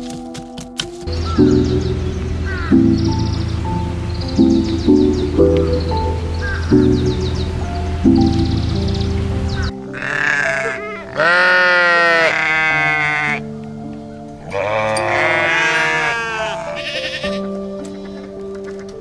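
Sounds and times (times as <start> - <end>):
calm background music: 0.0 - 19.0
farm animal bleating: 9.9 - 13.4, 14.4 - 18.4.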